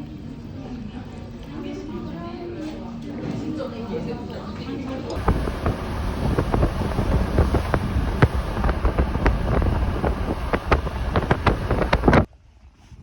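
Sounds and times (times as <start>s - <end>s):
wind buffeting microphone: 5.2s - 12.3s.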